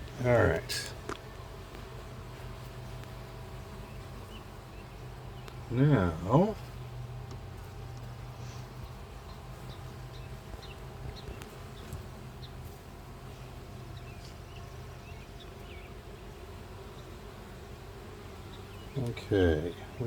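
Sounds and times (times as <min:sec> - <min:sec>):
honeybees humming: 0:00.0 - 0:20.0
faint ticks and chirps: 0:06.6 - 0:17.3.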